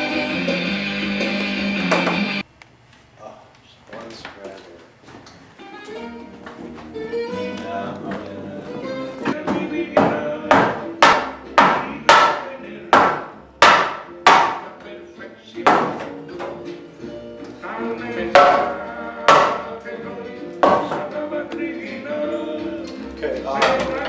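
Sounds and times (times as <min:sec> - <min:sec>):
background music: 0:00.0 - 0:02.4, 0:05.6 - 0:24.0
hammer blows: 0:09.3 - 0:14.7, 0:18.2 - 0:19.8, 0:20.6 - 0:21.2.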